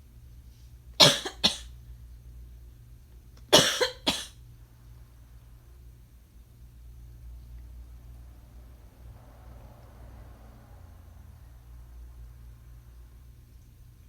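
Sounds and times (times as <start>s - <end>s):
person coughing: 1.0s - 1.7s, 3.6s - 4.4s.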